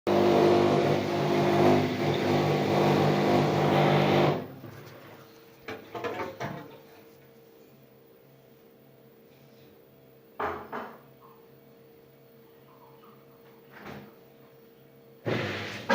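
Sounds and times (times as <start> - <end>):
washing machine humming: 0.1 - 7.2, 10.3 - 15.9.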